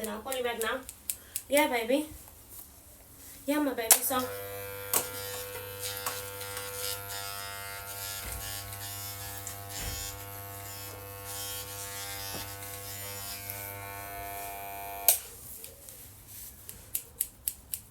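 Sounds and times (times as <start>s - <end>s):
electric appliance humming: 4.1s - 15.2s.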